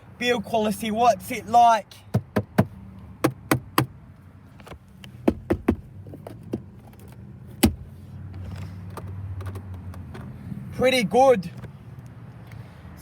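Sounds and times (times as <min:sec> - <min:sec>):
taps on plastic trim: 0:05.3 - 0:05.8.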